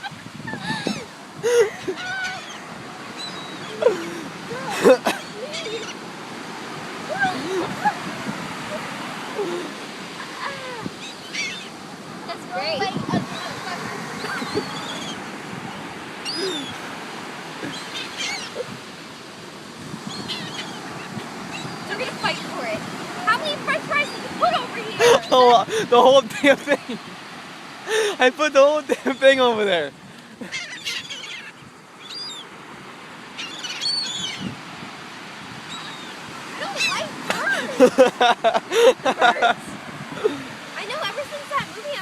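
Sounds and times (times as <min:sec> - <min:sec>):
birds squeaky calls: 0:00.0 - 0:06.4, 0:07.0 - 0:16.9, 0:17.5 - 0:18.9, 0:19.9 - 0:25.8, 0:30.2 - 0:32.6, 0:33.2 - 0:34.6, 0:35.4 - 0:38.0
surf washing: 0:00.0 - 0:42.0.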